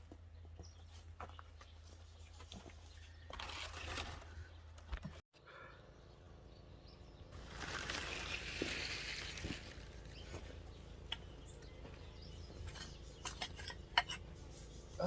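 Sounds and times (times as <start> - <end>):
leafy plants and soil rustling: 7.3 - 13.2.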